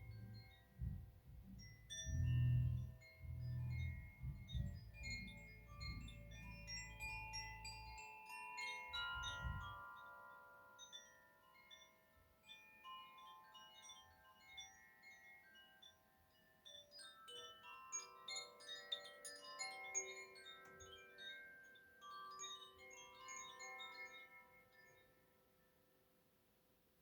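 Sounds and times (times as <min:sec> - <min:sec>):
low rumble: 0:00.0 - 0:08.0
bamboo wind chimes ringing: 0:00.0 - 0:25.1.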